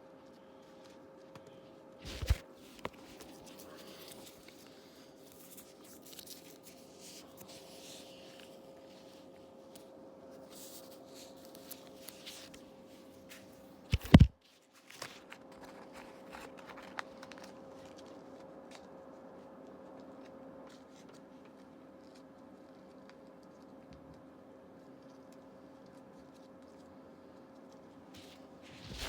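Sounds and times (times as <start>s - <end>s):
packaging rustling: 2.0s - 8.6s, 13.3s - 18.2s, 28.2s - 29.0s.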